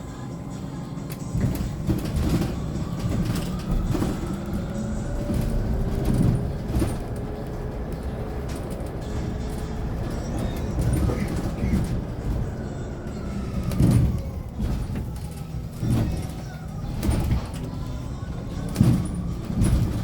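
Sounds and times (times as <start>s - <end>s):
bus road rumble and rattles: 0.0s - 20.0s.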